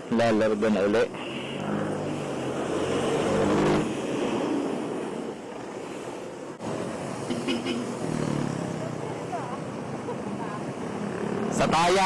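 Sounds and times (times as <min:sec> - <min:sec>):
wind and road noise rushing: 0:00.0 - 0:12.0
motorcycle engine pulling away: 0:01.6 - 0:03.9.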